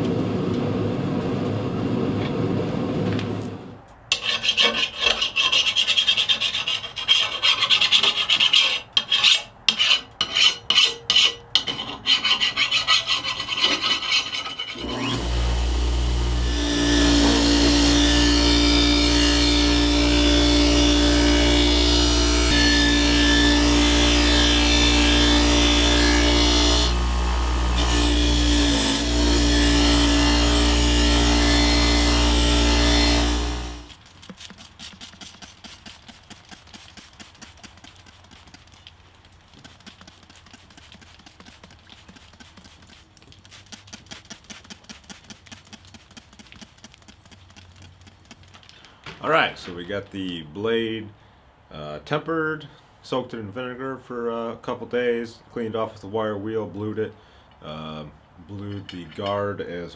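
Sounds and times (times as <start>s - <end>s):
rasping strokes on knife blade: 4.1s - 15.2s
power grinder grinding: 14.7s - 34.0s.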